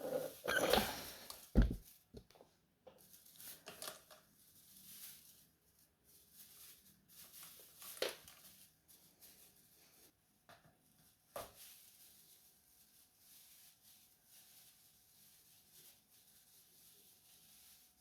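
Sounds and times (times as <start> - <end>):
soft thump: 1.6 - 1.8.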